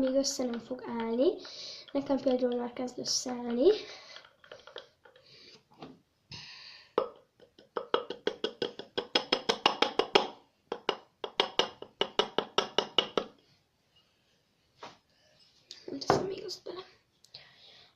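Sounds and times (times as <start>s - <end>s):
slime stirred with wet plops: 0.0s - 5.5s.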